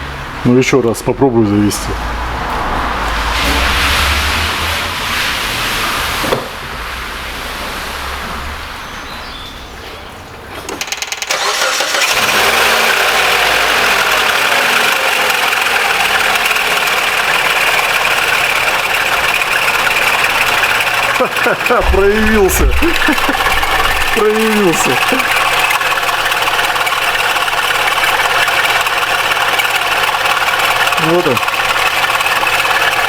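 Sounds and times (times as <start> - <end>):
car engine idling: 0.0 - 33.0
starter cranking: 10.5 - 33.0.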